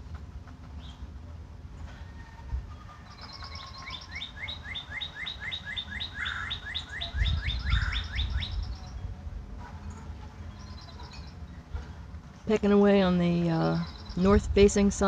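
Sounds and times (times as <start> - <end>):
high bird trilling: 2.9 - 9.0, 13.4 - 14.5
songbird singing descending notes: 3.0 - 9.1, 12.6 - 15.0
low rumble: 11.5 - 15.0.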